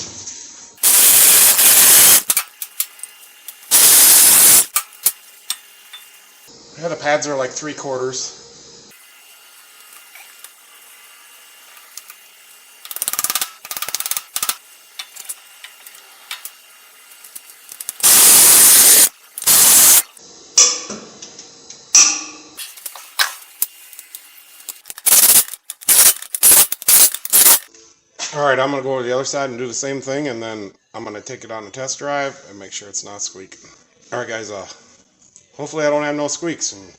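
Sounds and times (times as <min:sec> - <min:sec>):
tool clicks and rattles: 0:00.8 - 0:06.3, 0:11.6 - 0:20.1, 0:22.6 - 0:27.7
spray can hissing: 0:00.8 - 0:06.5, 0:08.9 - 0:20.2, 0:22.6 - 0:27.7.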